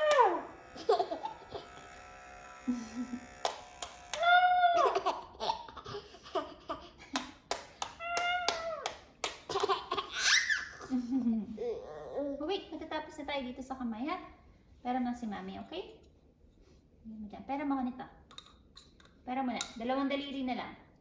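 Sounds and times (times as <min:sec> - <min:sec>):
sharp clicks: 0:00.0 - 0:04.3.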